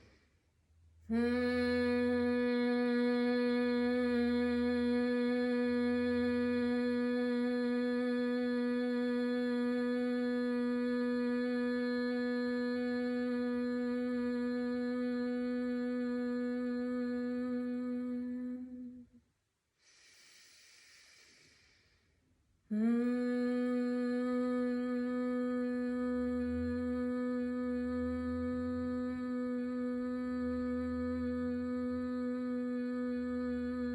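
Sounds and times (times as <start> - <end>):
soft breath in: 0.0 - 0.5, 19.8 - 22.2
woman humming steady note: 1.1 - 19.1, 22.7 - 33.9.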